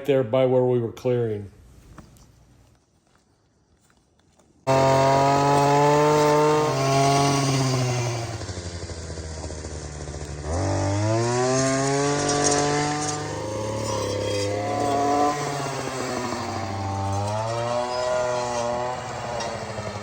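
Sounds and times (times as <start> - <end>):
chainsaw revving: 4.7 - 20.0.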